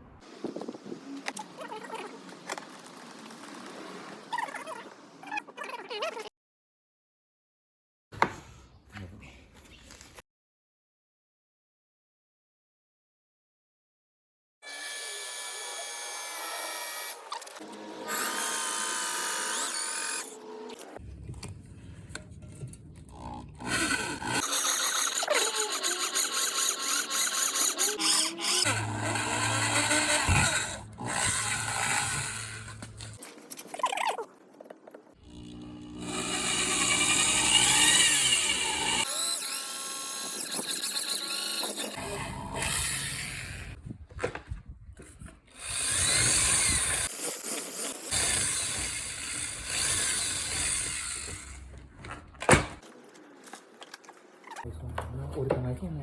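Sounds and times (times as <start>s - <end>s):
rhythmic tool working strokes: 23.2s - 33.2s, 35.2s - 43.8s, 45.6s - 51.7s
power tool motor whine: 23.6s - 24.9s, 25.6s - 33.2s, 35.2s - 43.8s, 45.6s - 51.7s.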